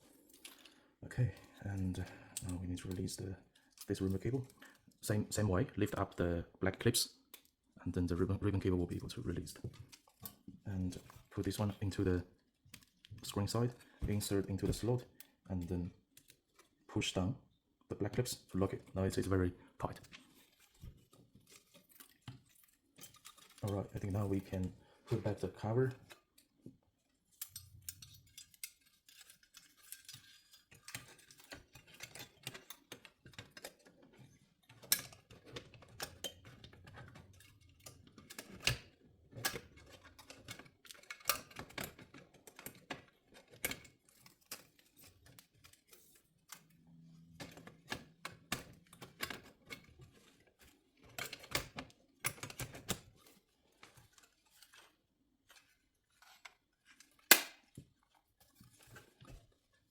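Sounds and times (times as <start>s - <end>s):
plastic clicks and rattles: 27.3s - 59.8s.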